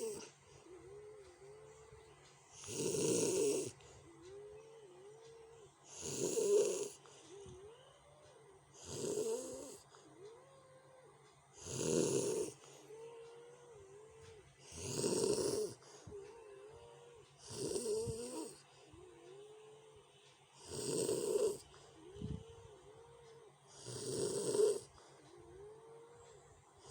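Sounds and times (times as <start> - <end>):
loud harsh snores: 0.0 - 0.3, 2.6 - 3.8, 5.9 - 7.1, 8.8 - 9.8, 11.6 - 12.6, 14.6 - 15.9, 17.4 - 18.6, 20.6 - 21.6, 23.7 - 24.9.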